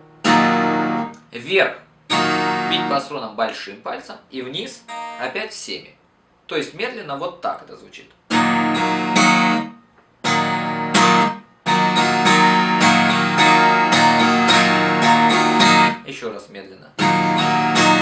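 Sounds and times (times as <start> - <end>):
guitar strummed: 0.0 - 1.3, 2.1 - 3.1, 4.8 - 5.4, 8.3 - 16.0, 17.0 - 18.0.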